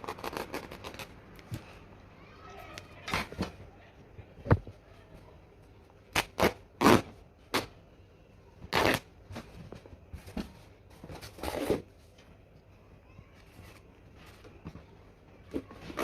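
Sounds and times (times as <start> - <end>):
clattering and scraping handling noises: 9.2 - 12.4.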